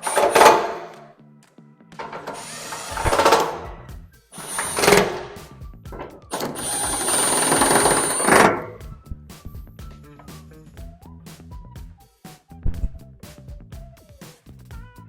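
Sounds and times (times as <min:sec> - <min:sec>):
power tool whining: 0:00.0 - 0:01.0, 0:02.0 - 0:03.8, 0:04.4 - 0:08.8.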